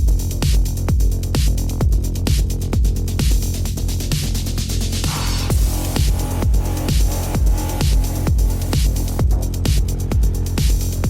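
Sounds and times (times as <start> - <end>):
electronic dance music: 5.1 - 11.0.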